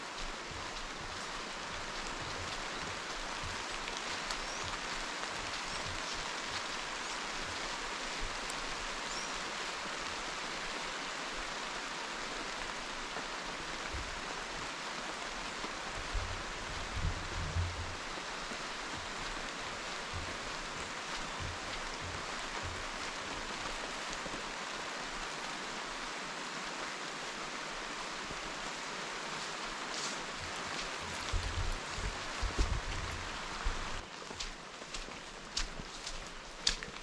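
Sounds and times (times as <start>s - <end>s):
steady rain hiss: 0.0s - 37.0s
low thumps: 31.2s - 34.0s.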